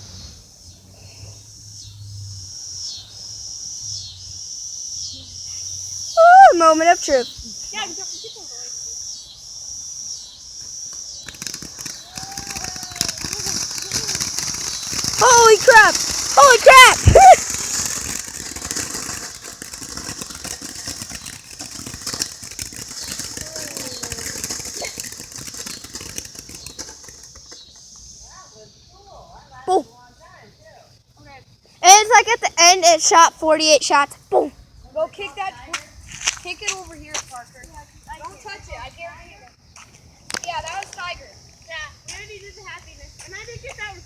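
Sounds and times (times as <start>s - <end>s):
insects chirping: 0.0s - 44.0s
firework crackling and popping: 5.7s - 9.0s, 10.5s - 28.6s, 31.2s - 34.5s, 35.2s - 44.0s.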